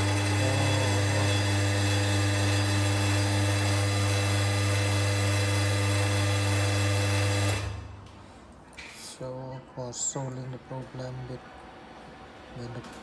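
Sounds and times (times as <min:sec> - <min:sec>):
water pump humming: 0:00.0 - 0:08.0.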